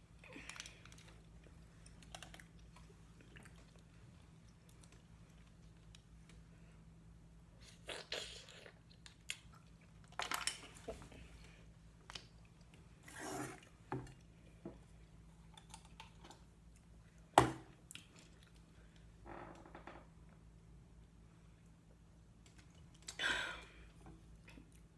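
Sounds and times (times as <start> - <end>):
wet chewing and smacking: 0.6 - 6.1.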